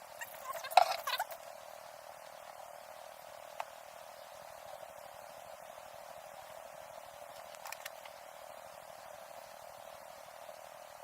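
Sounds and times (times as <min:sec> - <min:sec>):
faint steady hiss: 0:00.0 - 0:11.0.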